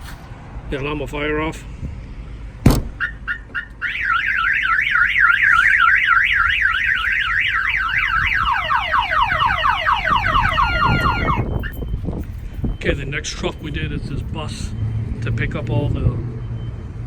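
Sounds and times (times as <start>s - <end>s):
car alarm siren: 3.0s - 11.9s.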